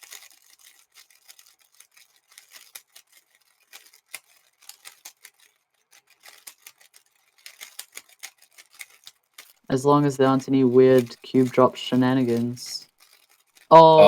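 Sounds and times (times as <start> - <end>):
speed cube clicking: 0.0 - 9.7.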